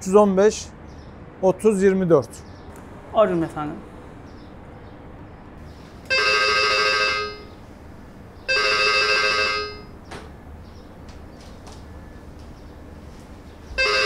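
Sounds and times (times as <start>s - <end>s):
intercom ringing: 6.1s - 7.6s, 8.5s - 10.0s, 13.8s - 14.0s.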